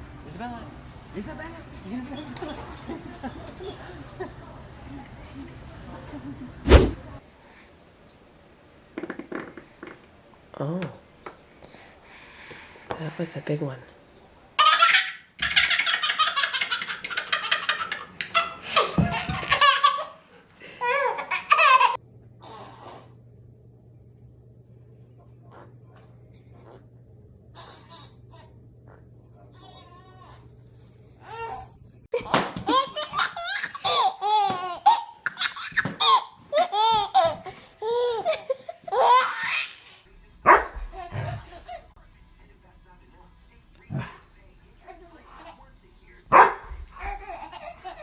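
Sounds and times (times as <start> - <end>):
baby laughing: 14.6 - 20.2, 20.8 - 23.0, 32.2 - 40.0, 44.8 - 45.6, 46.9 - 48.0
baby laughing and squealing: 32.8 - 39.9.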